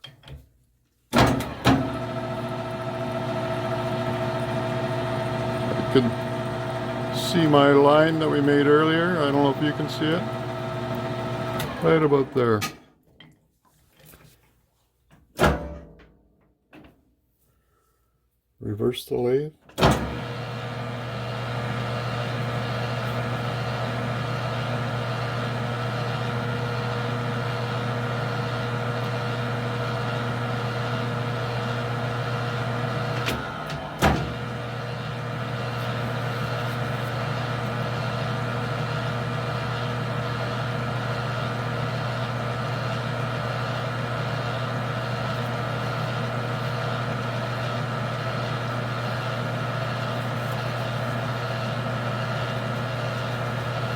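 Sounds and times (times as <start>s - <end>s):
metal lathe running: 1.4s - 12.5s, 20.1s - 53.9s.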